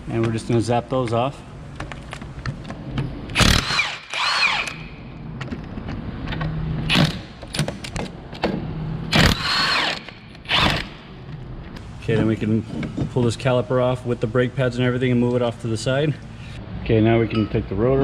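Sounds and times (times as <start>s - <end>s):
impact wrench whining: 3.3s - 5.1s, 6.8s - 7.9s, 9.1s - 11.2s.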